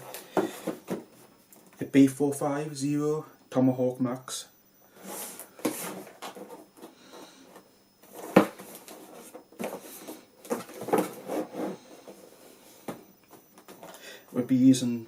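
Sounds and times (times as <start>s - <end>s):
computer parts rustling and rubbing: 0.0s - 1.8s, 4.9s - 14.8s.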